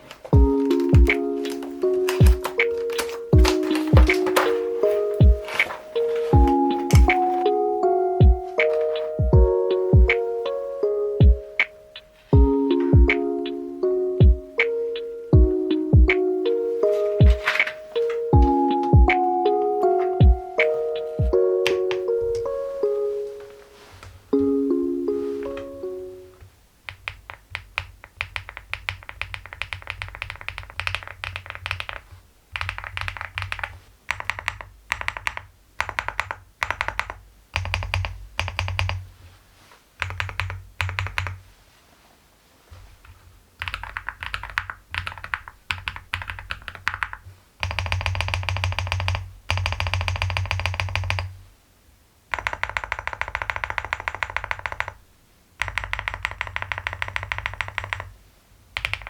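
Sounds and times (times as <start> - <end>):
mechanical keyboard typing: 0.0 - 7.5, 21.6 - 22.5, 26.9 - 39.0, 40.0 - 41.4, 43.0 - 51.3, 52.3 - 55.0, 55.6 - 58.1, 58.8 - 59.0.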